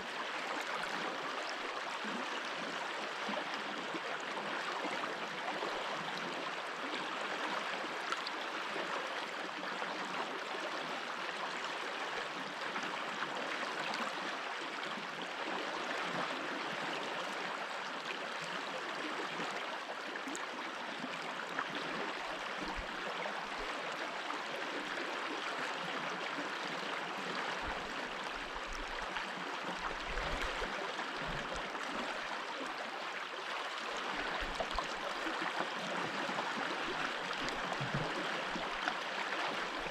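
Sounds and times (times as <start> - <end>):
stream running over stones: 18.8 - 39.9.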